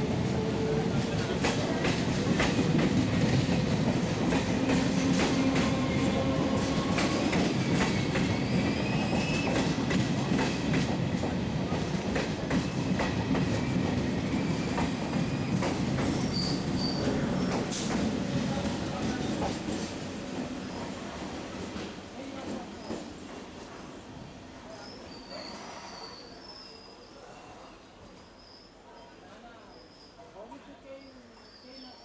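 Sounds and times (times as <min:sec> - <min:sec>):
train rumbling: 0:00.0 - 0:23.8
faint wheel squeal: 0:24.7 - 0:32.0.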